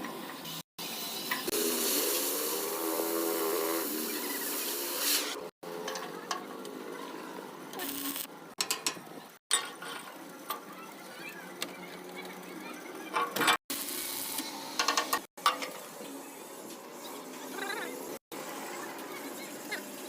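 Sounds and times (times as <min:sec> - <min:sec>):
arc welding crackling hiss: 0:00.3 - 0:05.5, 0:07.8 - 0:08.4, 0:13.7 - 0:15.3.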